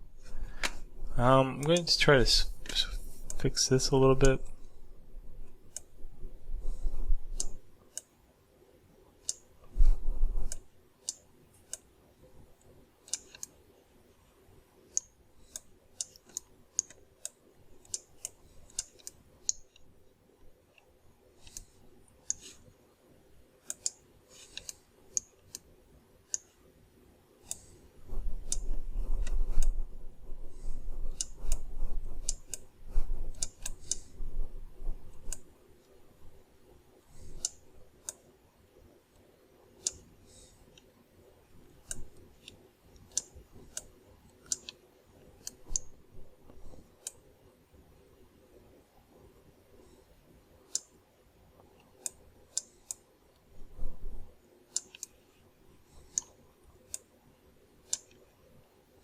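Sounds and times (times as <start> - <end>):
mouse and keyboard clicking: 6.7 - 8.1, 13.0 - 13.6, 14.9 - 19.9, 20.7 - 22.6, 23.6 - 25.7, 28.4 - 29.8, 30.5 - 32.7, 33.3 - 34.2, 35.1 - 36.0, 37.1 - 38.2, 41.8 - 44.8, 45.4 - 47.2, 54.7 - 55.2, 57.8 - 58.3.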